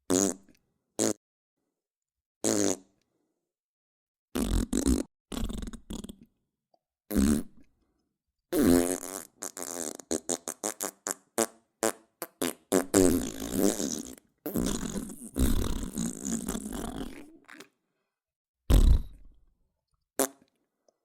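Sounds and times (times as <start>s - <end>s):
fart sounds: 0.1s - 1.2s, 2.4s - 2.9s, 4.4s - 6.3s, 7.1s - 7.6s, 8.5s - 17.7s, 18.7s - 19.4s, 20.2s - 20.5s.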